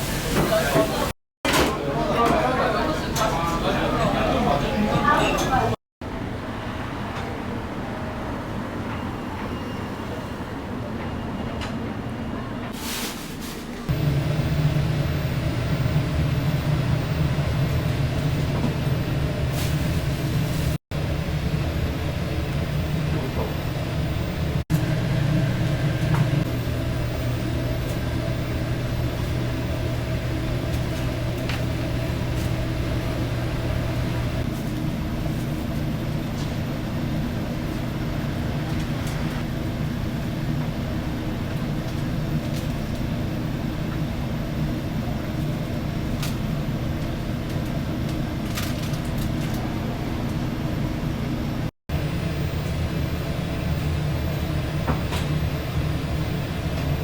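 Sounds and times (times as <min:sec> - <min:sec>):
kitchen equipment humming: 0:13.9 - 0:57.0.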